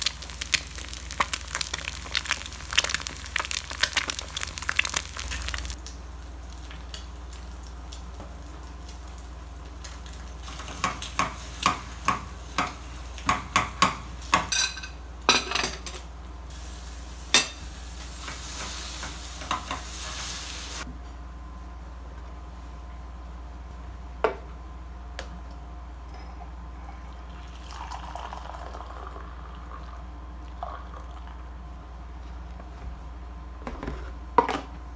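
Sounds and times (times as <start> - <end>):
dense crackling: 0.0 - 5.8
utensils and dishes clinking: 10.5 - 16.0, 17.3 - 19.9, 26.1 - 27.3.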